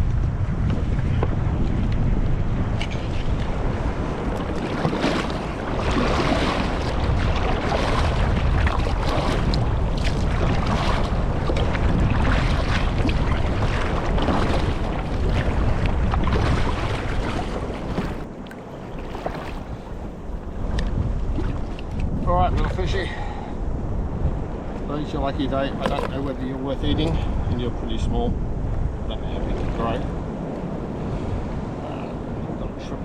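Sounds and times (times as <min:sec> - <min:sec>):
water sloshing against kayak: 0:00.0 - 0:27.8, 0:28.4 - 0:33.0
wind buffeting microphone: 0:00.0 - 0:33.0
small splashes and knocks: 0:04.3 - 0:19.8, 0:25.5 - 0:26.5.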